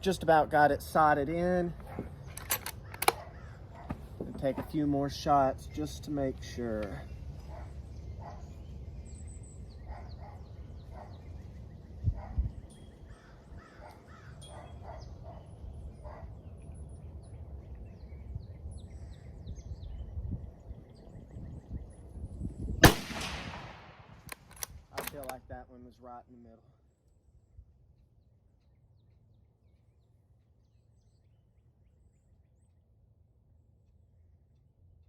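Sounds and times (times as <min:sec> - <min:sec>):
outdoor background: 0:00.0 - 0:35.0
rifle shot: 0:22.8 - 0:25.3.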